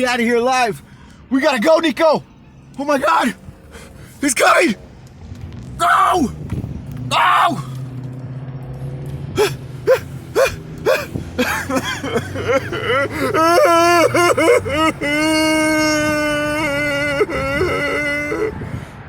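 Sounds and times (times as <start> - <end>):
person crying out and wailing: 5.8 - 6.4, 7.1 - 7.8, 9.4 - 18.7.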